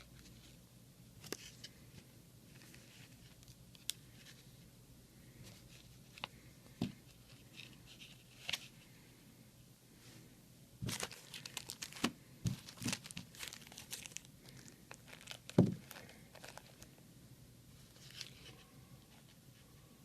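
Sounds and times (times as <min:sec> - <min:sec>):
packaging crinkling and tearing: 0:10.8 - 0:17.0.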